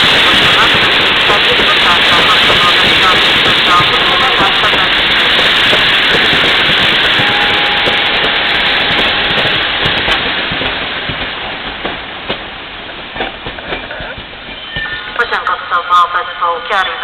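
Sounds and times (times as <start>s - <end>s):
train wheels rushing on rails: 0.0s - 16.2s.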